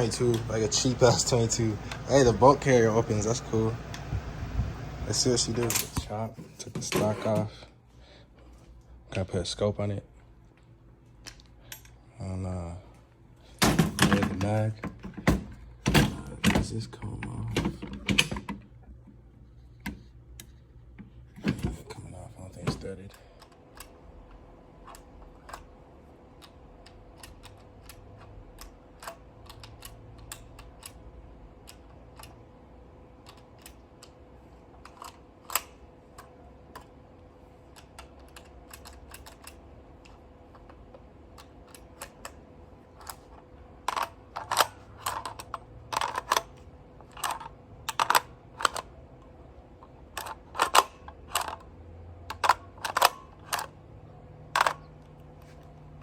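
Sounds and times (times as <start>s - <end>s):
faint steady hum: 0.0s - 56.0s
airgun parts clicking: 37.7s - 48.9s, 49.8s - 53.8s, 54.5s - 55.7s.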